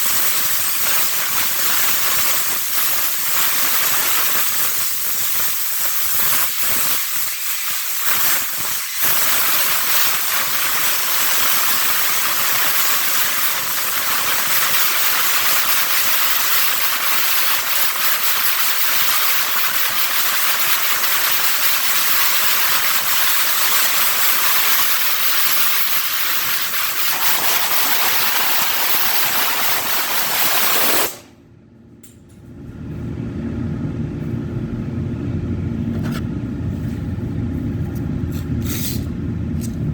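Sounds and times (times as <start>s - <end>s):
paint spray gun hissing: 0.0s - 31.3s
low steady rumble: 31.4s - 39.9s.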